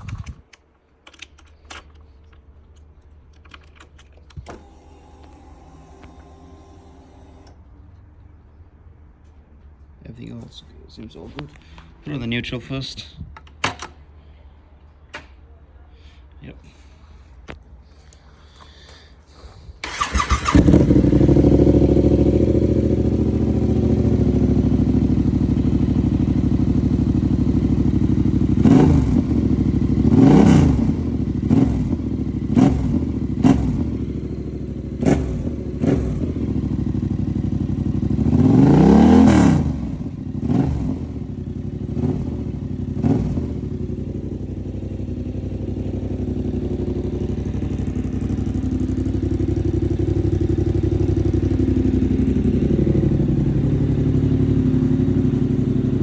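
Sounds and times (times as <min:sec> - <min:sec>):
motorcycle engine idling: 0:18.0 - 0:56.0
motorcycle throttle revs: 0:19.8 - 0:56.0.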